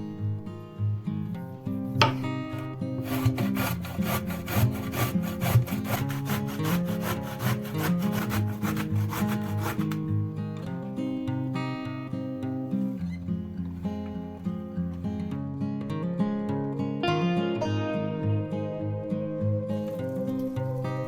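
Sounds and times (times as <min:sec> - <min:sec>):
acoustic guitar music: 0:00.0 - 0:21.0
zucchini scraping on grater: 0:03.0 - 0:10.0.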